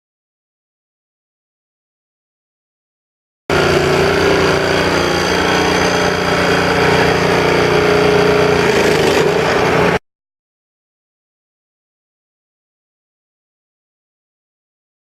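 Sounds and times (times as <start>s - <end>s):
petrol engine running: 3.5s - 10.0s.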